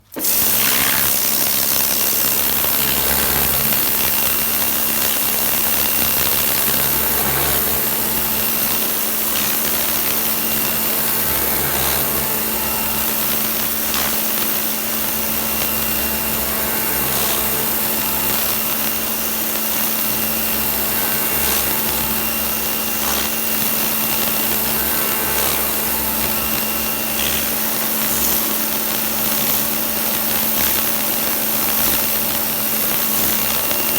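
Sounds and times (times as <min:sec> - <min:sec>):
pressure washer motor hum: 0:00.0 - 0:33.9
water jet spraying onto stone: 0:00.1 - 0:33.9.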